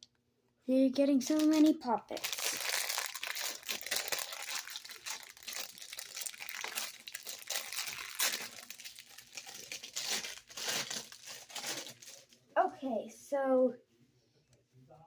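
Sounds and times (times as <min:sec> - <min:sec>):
crinkly wrapping tearing: 0:01.3 - 0:12.4.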